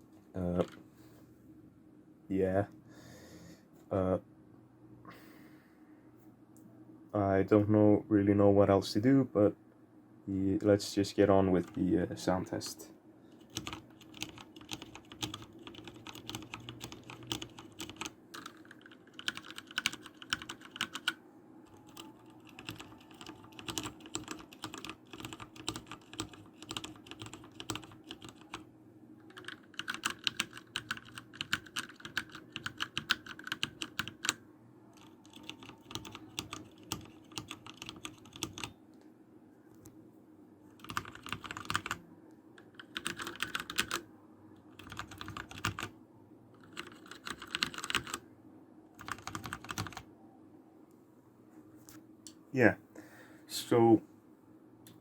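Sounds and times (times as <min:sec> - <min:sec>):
typing on mechanical keyboard: 0:13.4 - 0:28.6, 0:29.3 - 0:34.4, 0:35.0 - 0:38.7, 0:40.8 - 0:42.0, 0:42.6 - 0:44.0, 0:44.7 - 0:45.9, 0:46.6 - 0:48.2, 0:49.0 - 0:50.0.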